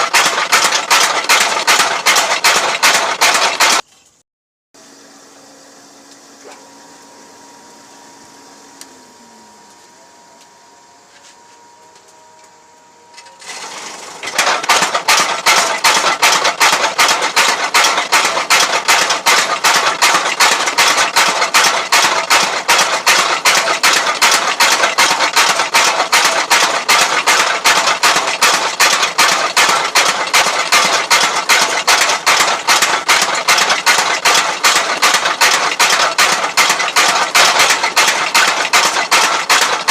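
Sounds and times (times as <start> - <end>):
power hammer pounding steel: 0.0 - 3.8, 13.4 - 39.9.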